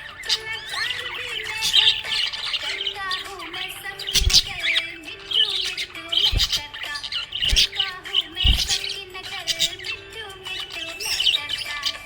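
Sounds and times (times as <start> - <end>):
budgies chirping: 0.0 - 12.0
low thumps: 6.2 - 6.6, 8.4 - 8.8.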